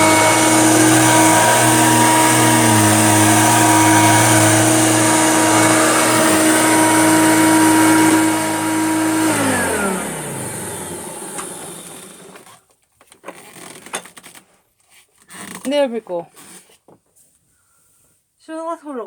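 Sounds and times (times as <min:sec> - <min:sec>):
vacuum cleaner running: 0:00.0 - 0:12.5.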